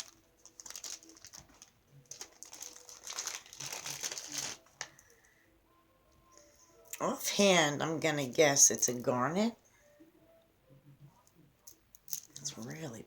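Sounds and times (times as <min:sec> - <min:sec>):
packaging crinkling: 0:00.0 - 0:05.1.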